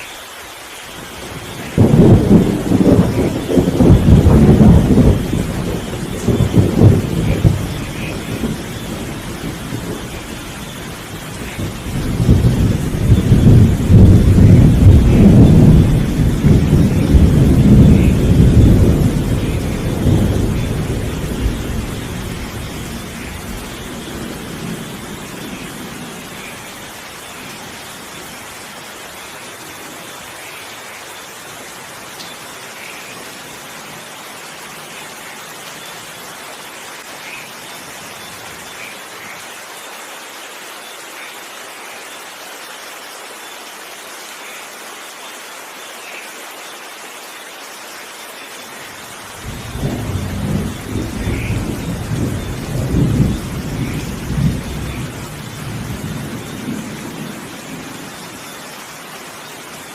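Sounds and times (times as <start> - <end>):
steady rain falling: 0.0 - 59.9
thunder rolling: 1.4 - 26.4, 49.4 - 58.1.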